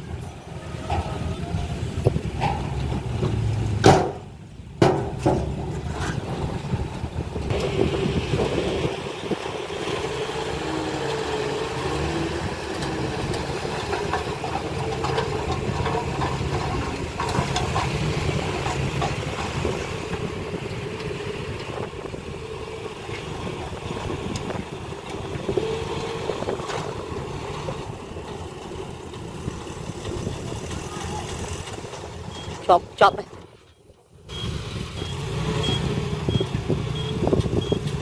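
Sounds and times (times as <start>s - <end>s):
heavy machinery diesel engine: 0.0s - 38.0s.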